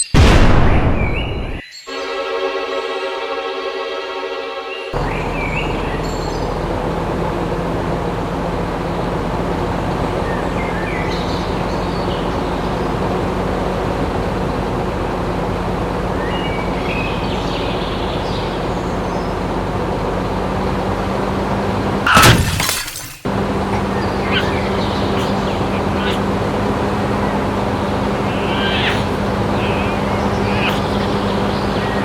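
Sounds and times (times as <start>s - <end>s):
loud crash: 0.1s - 1.6s, 22.1s - 23.2s.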